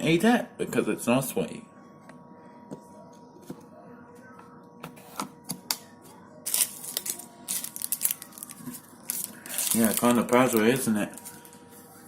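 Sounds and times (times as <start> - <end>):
dishwasher tablet wrapper crackling: 6.5 - 11.6.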